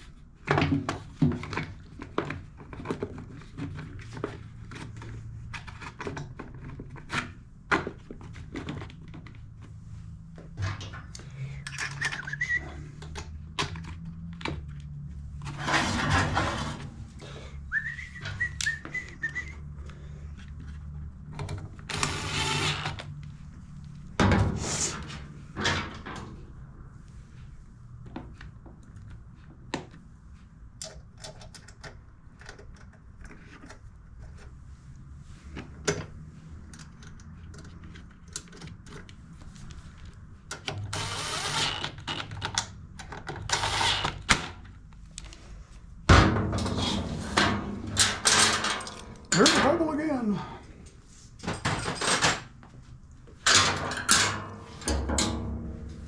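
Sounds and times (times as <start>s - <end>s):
person whistling: 11.8s - 12.8s, 17.7s - 19.7s
low steady hum: 52.7s - 56.0s.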